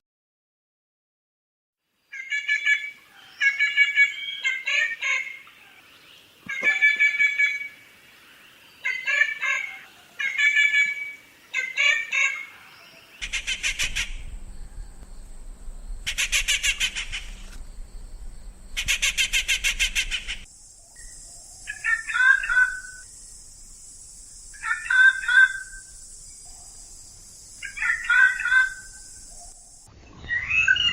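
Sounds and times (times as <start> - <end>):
bird harsh calls: 8.8 - 15.0, 15.9 - 17.6, 18.7 - 23.2, 24.5 - 26.8, 27.5 - 30.9
bird rapid rattles: 13.2 - 20.5
steady hiss: 13.2 - 29.9.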